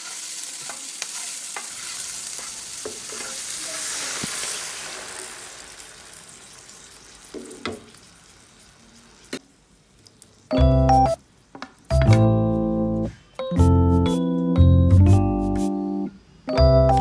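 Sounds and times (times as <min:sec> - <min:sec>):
food sizzling in a frying pan: 0:00.0 - 0:12.0
piano music: 0:10.5 - 0:11.2, 0:11.9 - 0:17.0.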